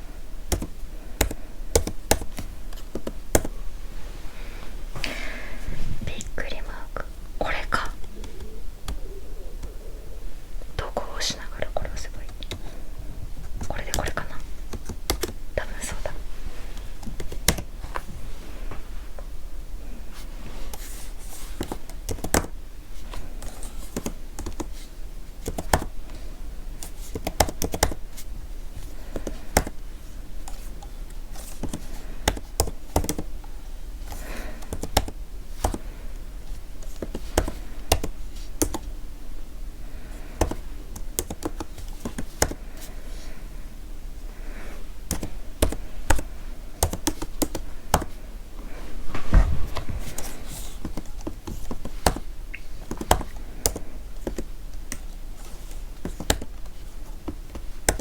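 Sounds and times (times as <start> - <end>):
keyboard typing: 0.5 - 3.6, 13.6 - 15.4, 17.0 - 17.7, 21.6 - 22.5, 25.4 - 25.9, 27.1 - 28.0, 31.4 - 33.3, 34.6 - 35.8, 40.3 - 42.6, 45.1 - 48.2.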